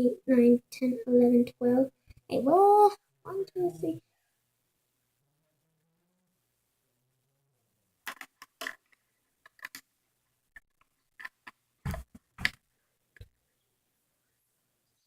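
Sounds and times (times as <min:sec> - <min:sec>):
plastic toy bricks clicking: 0:08.0 - 0:09.8, 0:11.2 - 0:11.6.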